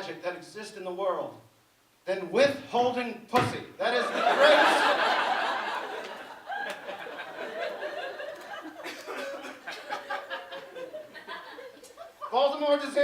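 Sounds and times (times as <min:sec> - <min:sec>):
audience laughing: 0:04.0 - 0:12.4.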